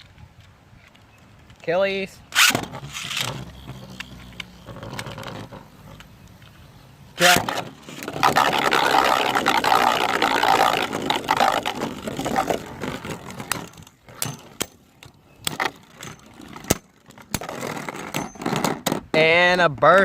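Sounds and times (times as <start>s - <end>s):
spinning tops whirring and grinding: 7.2s - 13.9s.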